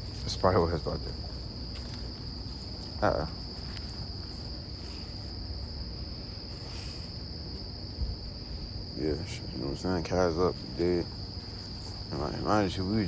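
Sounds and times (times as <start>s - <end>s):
crickets chirring: 0.0s - 13.0s.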